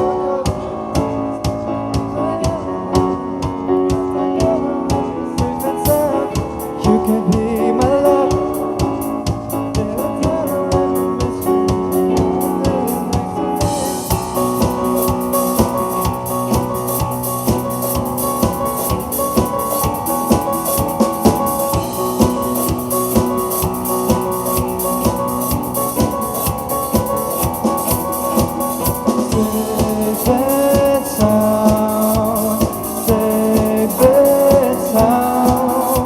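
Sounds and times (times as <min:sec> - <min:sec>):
drum kit beat: 0:00.0 - 0:36.0
piano chords: 0:00.0 - 0:36.0.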